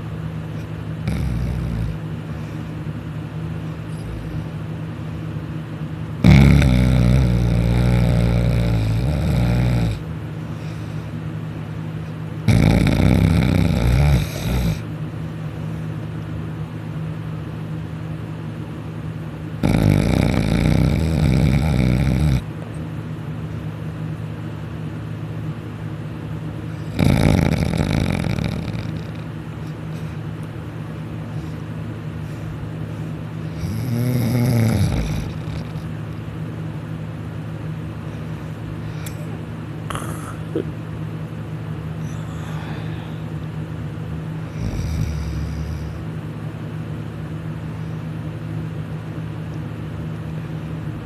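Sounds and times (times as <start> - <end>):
steady low hum: 0.0 - 51.0
person snoring loudly: 1.0 - 2.0, 6.2 - 10.0, 12.5 - 14.8, 19.6 - 22.5, 26.8 - 29.3, 33.5 - 35.9, 39.9 - 40.6, 44.4 - 46.1.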